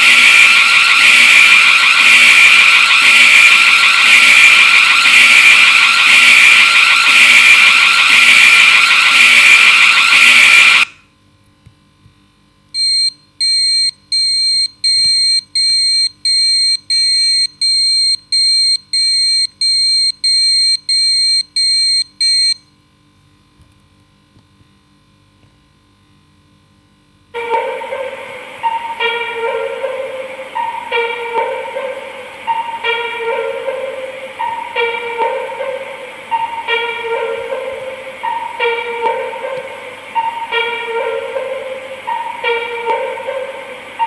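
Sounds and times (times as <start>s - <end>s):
electronic alarm beeping: 0.0s - 11.0s, 12.8s - 22.6s, 27.4s - 44.0s
loud harsh noise: 0.0s - 11.0s, 27.4s - 44.0s.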